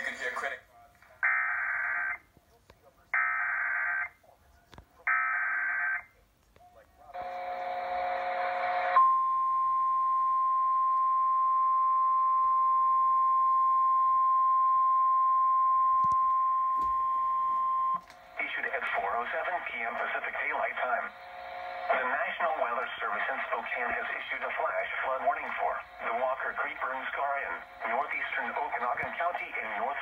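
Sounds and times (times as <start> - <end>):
harsh buzzing tone: 20.9 - 22.2.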